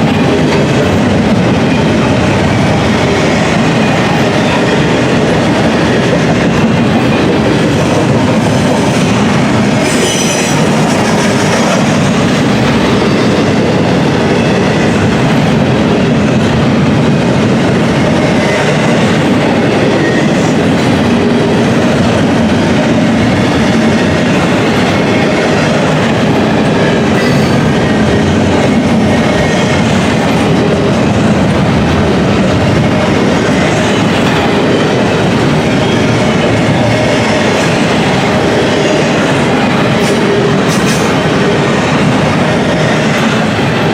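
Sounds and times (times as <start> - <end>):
train wheels clattering over rail joints: 0.0 - 43.9
high wheel squeal: 9.8 - 11.8.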